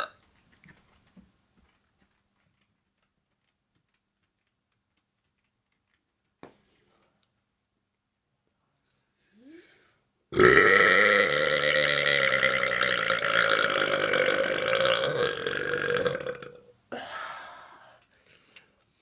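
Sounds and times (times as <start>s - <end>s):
woman belching: 10.3s - 16.7s.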